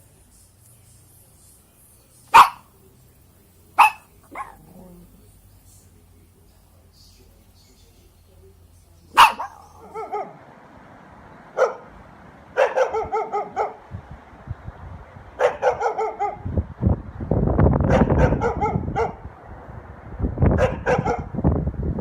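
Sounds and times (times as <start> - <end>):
dog barking: 2.3 - 2.8, 3.8 - 5.1, 9.1 - 10.5, 11.6 - 13.9, 15.4 - 16.5, 17.9 - 19.2, 20.6 - 21.4
loud low rumbling: 10.3 - 15.4, 16.2 - 22.0.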